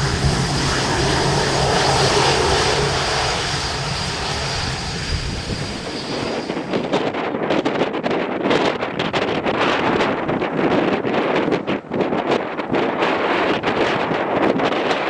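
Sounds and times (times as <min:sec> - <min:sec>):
jet engines roaring: 0:00.0 - 0:07.0
wind buffeting microphone: 0:00.0 - 0:14.6.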